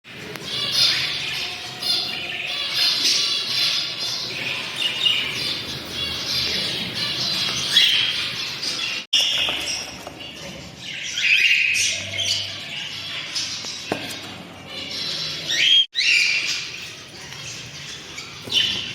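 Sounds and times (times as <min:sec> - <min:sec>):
budgerigars chattering and squawking: 0:00.1 - 0:09.1, 0:14.8 - 0:18.9.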